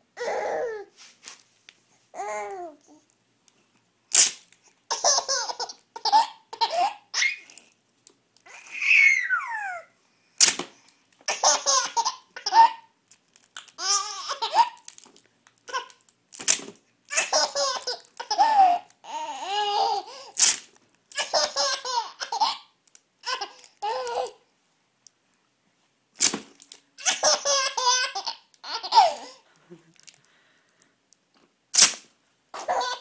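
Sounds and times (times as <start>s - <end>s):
tape ripping off roll: 4.1s - 4.6s, 10.4s - 11.4s, 14.8s - 17.7s, 20.4s - 21.4s, 26.2s - 27.4s, 31.7s - 32.1s
baby giggling: 4.9s - 7.4s, 8.5s - 9.9s, 11.3s - 12.9s, 17.1s - 20.2s, 21.2s - 24.4s, 27.0s - 29.9s, 32.6s - 33.0s.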